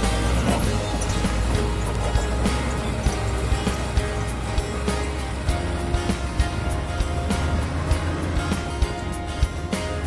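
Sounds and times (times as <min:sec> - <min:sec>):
bulldozer diesel engine running: 0:00.0 - 0:10.0
music: 0:00.0 - 0:10.0.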